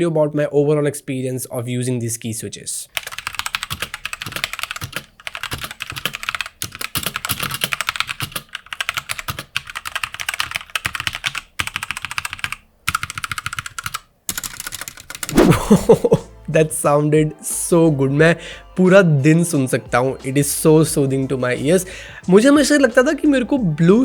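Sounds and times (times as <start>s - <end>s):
fast typing on keyboard: 3.0s - 15.4s.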